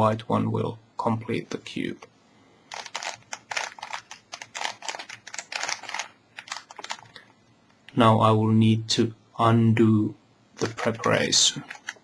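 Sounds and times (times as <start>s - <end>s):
puzzle cube rattling clicks: 2.7s - 7.2s, 10.6s - 12.0s.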